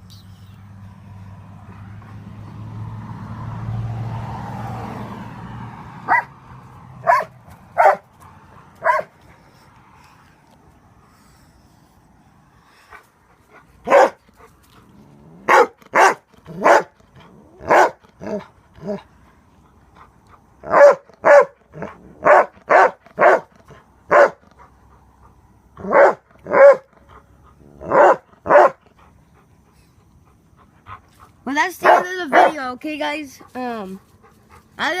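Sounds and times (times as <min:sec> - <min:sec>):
dog barking: 0:06.0 - 0:06.4, 0:07.0 - 0:08.1, 0:08.8 - 0:09.2, 0:13.9 - 0:14.2, 0:15.4 - 0:17.0, 0:17.6 - 0:19.0, 0:20.6 - 0:23.5, 0:24.1 - 0:24.4, 0:25.8 - 0:26.9, 0:27.8 - 0:28.8, 0:31.8 - 0:32.6.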